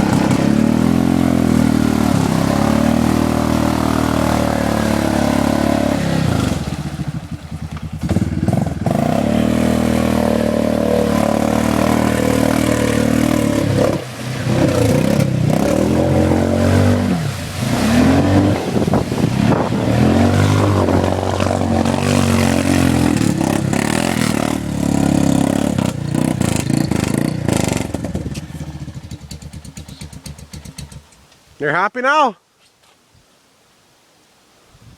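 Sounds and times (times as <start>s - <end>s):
atv engine revving under load: 0.0s - 31.2s.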